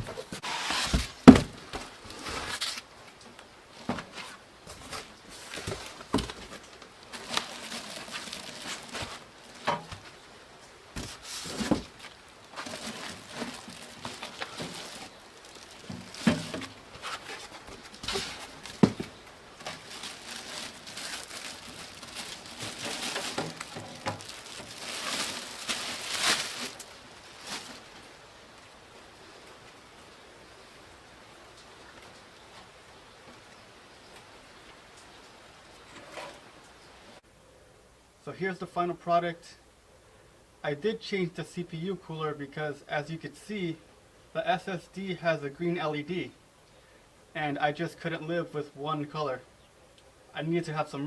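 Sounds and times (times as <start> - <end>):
rustling of parts and packaging: 0.0 - 28.3.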